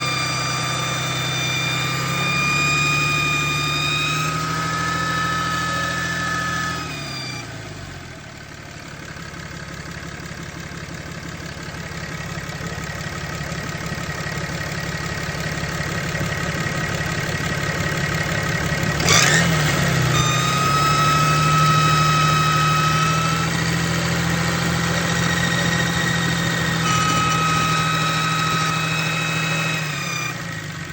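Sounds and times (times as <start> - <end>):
high-pitched whistling whine: 0.0 - 7.6, 20.0 - 30.6
diesel engine running: 0.0 - 30.9.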